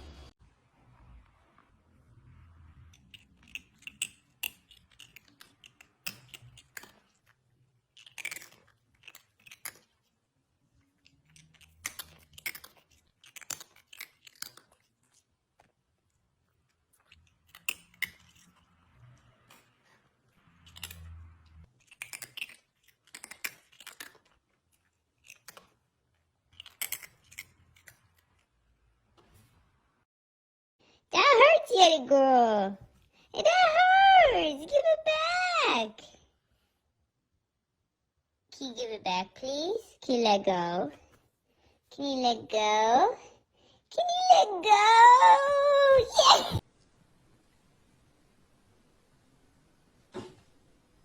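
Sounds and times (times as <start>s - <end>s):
chewing and crunching: 2.8s - 28.8s.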